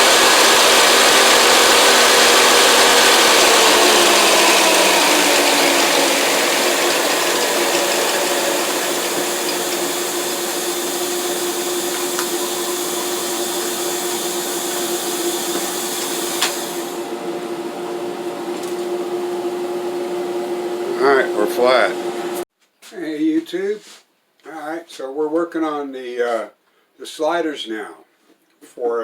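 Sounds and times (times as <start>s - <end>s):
thickness planer hissing: 0.0s - 22.4s.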